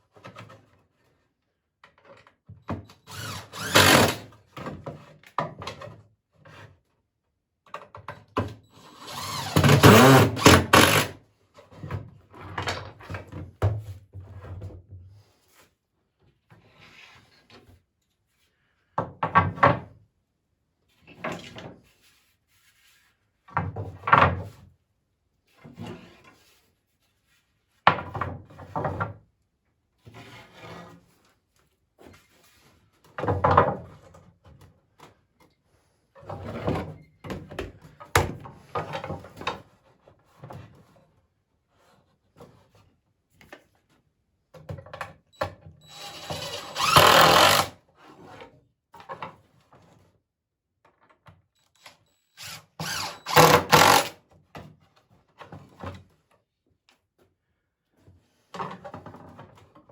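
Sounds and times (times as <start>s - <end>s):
cordless drill driving screws: 3.1s - 4.3s, 8.8s - 11.2s, 45.8s - 47.8s, 51.8s - 54.2s.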